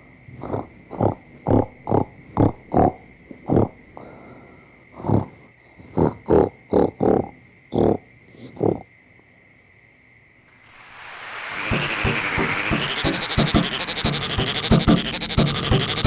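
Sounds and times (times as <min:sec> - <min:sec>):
rising hiss: 0:10.6 - 0:16.0.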